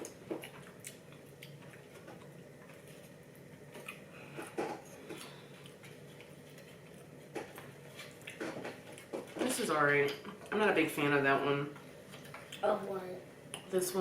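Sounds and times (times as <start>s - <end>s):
person chewing: 0.0s - 9.3s.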